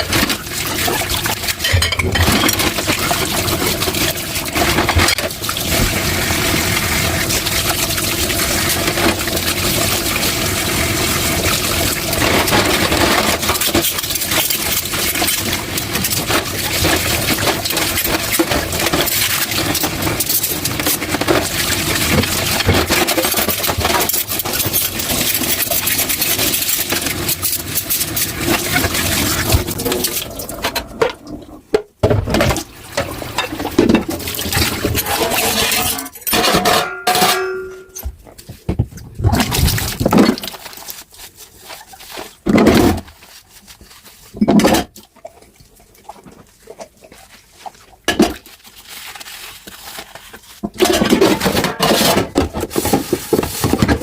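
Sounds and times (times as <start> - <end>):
tap water running into sink: 0.0 - 31.3
dishes clinking: 1.6 - 2.6, 35.7 - 38.1.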